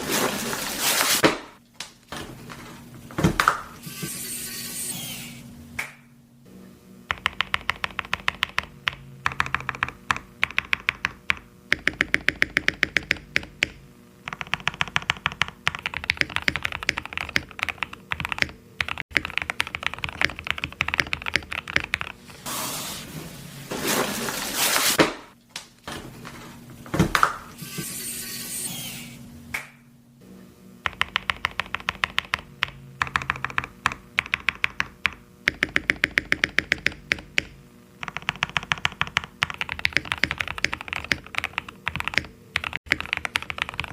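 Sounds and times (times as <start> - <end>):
mechanical keyboard typing: 7.1 - 22.2, 30.9 - 43.9.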